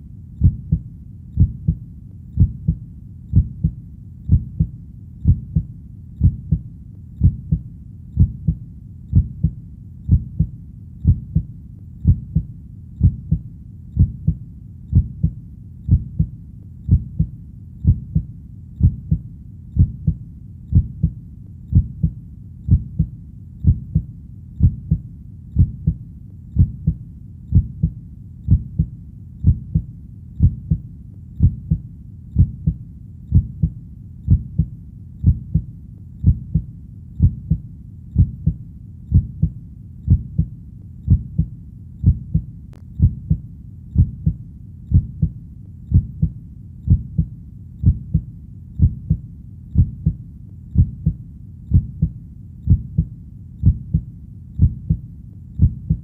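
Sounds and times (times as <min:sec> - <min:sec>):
faint low rumble: 0:00.0 - 0:56.0
heartbeat double thud: 0:55.6 - 0:56.0.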